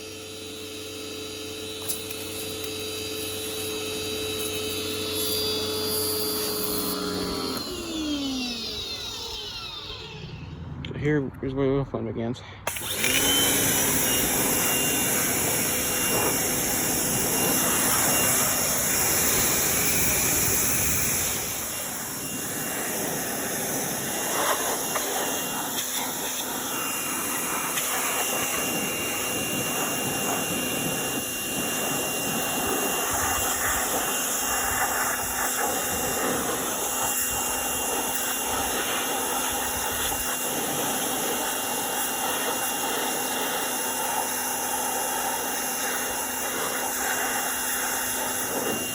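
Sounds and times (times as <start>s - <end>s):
pressure washer spraying water: 0.0s - 10.2s, 12.7s - 48.9s
machine humming: 0.0s - 11.7s, 12.6s - 48.9s.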